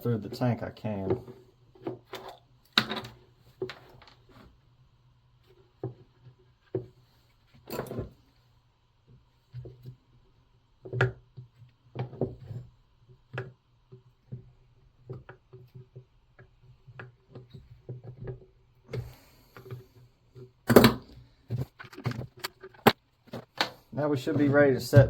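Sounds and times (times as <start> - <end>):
parts clicking and knocking: 1.0 - 4.4, 13.1 - 25.0.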